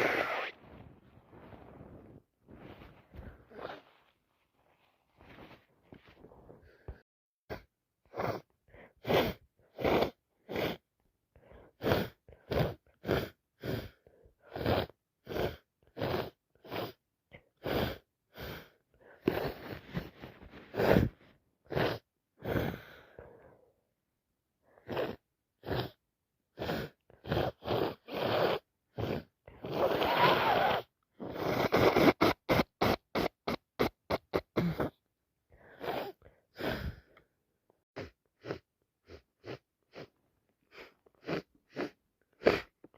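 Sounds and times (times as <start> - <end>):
nose-blowing: 0.0 - 3.9, 7.5 - 10.8, 11.8 - 17.0, 17.6 - 23.0, 24.8 - 26.0, 26.6 - 35.0, 35.6 - 37.2, 38.0 - 42.9
person sniffing through congested nose: 0.0 - 4.2, 5.2 - 10.8, 11.6 - 17.0, 17.6 - 23.4, 24.8 - 26.0, 26.6 - 35.0, 35.6 - 37.2, 38.0 - 42.9.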